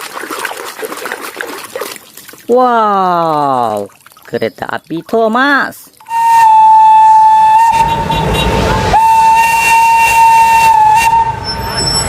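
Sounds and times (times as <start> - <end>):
train whistle blasts: 6.0 - 12.0.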